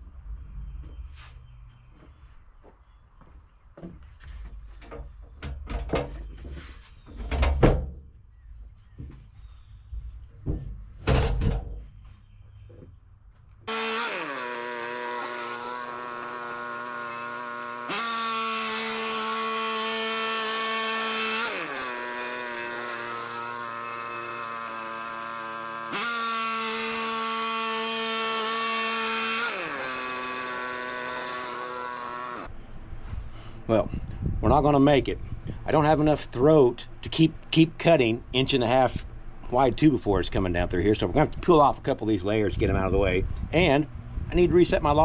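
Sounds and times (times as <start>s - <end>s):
bandsaw mill whine: 13.6s - 32.5s.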